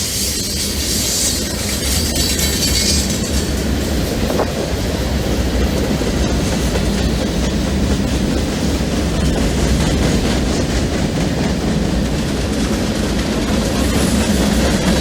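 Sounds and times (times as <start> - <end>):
high wheel squeal: 0.0 - 4.4
wheels clicking over rail joints: 0.0 - 4.8
freight train rumbling past: 0.0 - 15.0.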